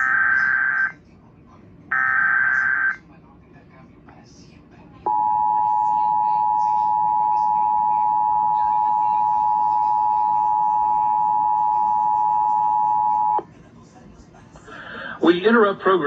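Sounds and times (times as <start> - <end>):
two-tone emergency alert signal: 0.0 - 1.0, 1.9 - 3.0, 5.1 - 13.4.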